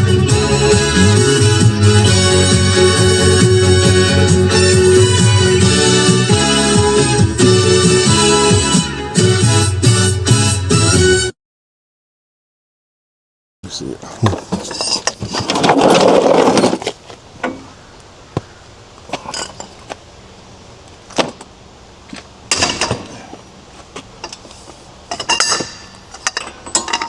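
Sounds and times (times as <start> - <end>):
metal tools clinking and rattling: 14.2 - 17.7, 19.1 - 19.9, 22.5 - 23.4, 25.1 - 27.0.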